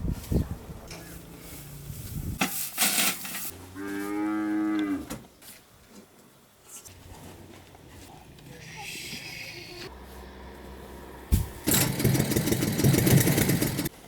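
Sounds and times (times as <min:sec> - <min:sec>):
noisy rustle: 0:00.0 - 0:03.6
cow mooing: 0:03.6 - 0:05.1.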